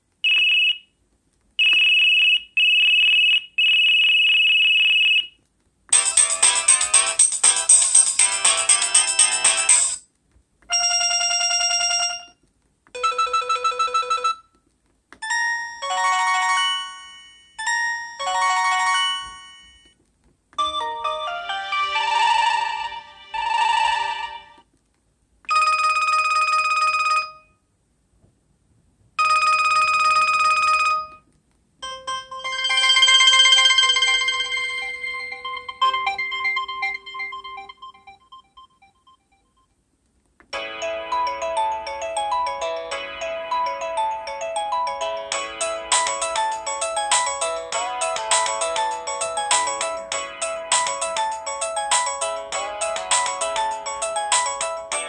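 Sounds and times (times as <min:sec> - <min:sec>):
cell phone ringtones: 0:05.9 - 0:10.0, 0:10.7 - 0:12.4, 0:13.0 - 0:14.5, 0:15.2 - 0:19.9, 0:31.8 - 0:39.7.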